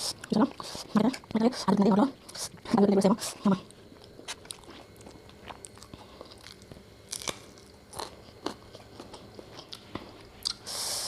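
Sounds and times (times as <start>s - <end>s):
person chewing rice: 3.2s - 10.8s.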